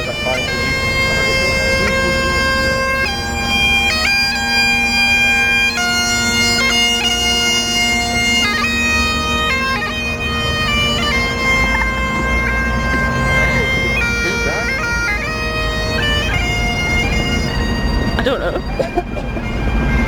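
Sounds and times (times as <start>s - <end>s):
bagpipes playing melody: 0.0s - 20.0s.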